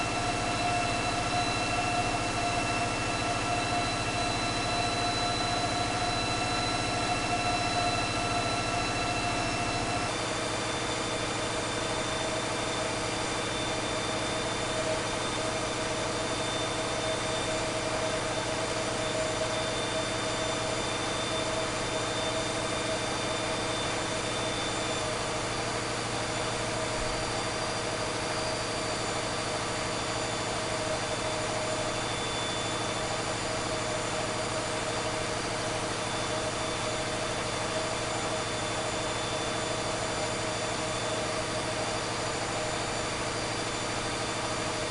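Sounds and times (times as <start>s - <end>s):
high whine: 0.0s - 25.6s.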